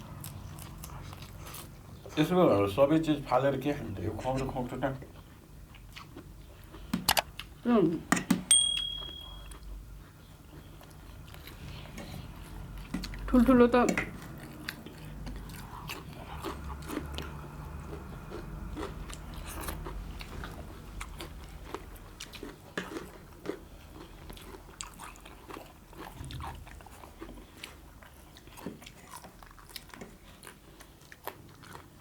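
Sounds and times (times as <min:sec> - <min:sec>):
crab shell crunching between teeth: 0:06.9 - 0:07.4.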